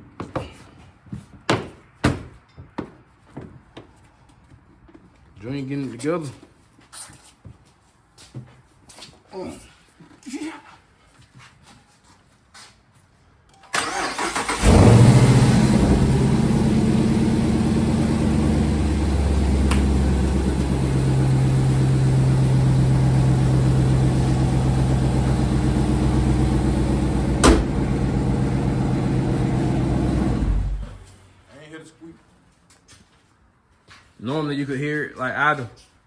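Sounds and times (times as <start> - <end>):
car engine starting and idling: 13.7 - 31.2.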